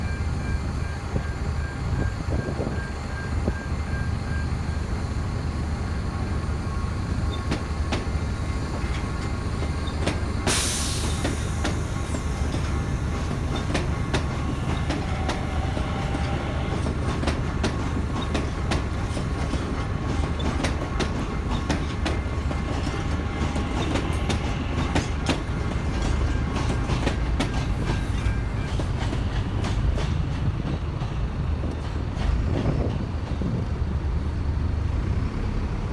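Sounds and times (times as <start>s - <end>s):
train rumble: 0.0s - 35.9s
train wheels clicking over rails: 6.2s - 34.0s.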